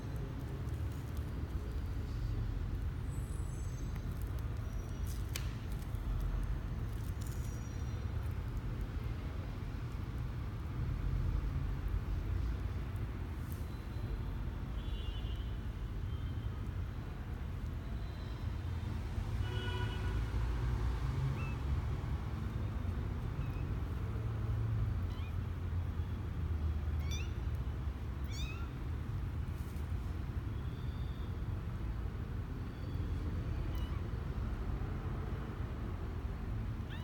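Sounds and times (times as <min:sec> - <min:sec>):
kittens mewing: 0:27.0 - 0:27.4, 0:28.2 - 0:28.8.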